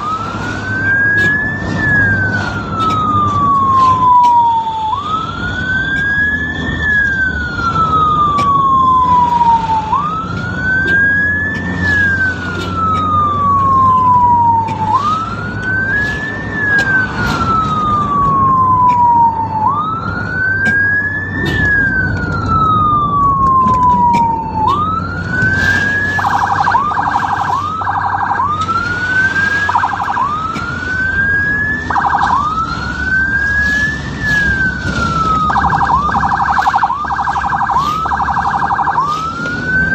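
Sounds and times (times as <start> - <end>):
ambulance siren wailing: 0.0 - 39.9
vehicle engine and road rumble: 0.0 - 39.9
siren high-low warble: 20.7 - 39.9.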